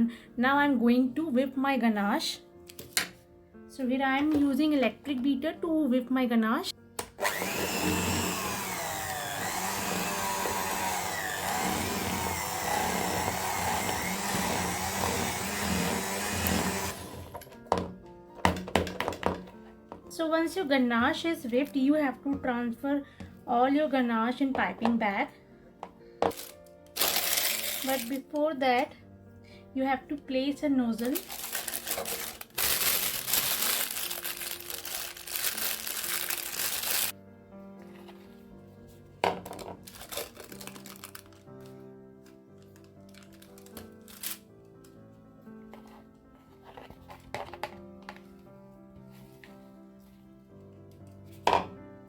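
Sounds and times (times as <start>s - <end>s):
electric hand beater running: 7.1s - 17.3s, 26.4s - 28.2s, 31.2s - 37.1s
plastic bag crinkling: 26.3s - 28.3s, 31.0s - 37.2s, 39.8s - 41.8s, 42.6s - 44.4s.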